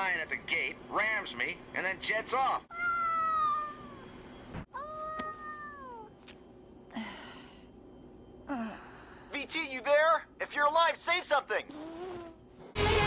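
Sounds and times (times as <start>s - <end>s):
cartoon cat meowing: 2.7s - 4.0s, 4.8s - 6.1s.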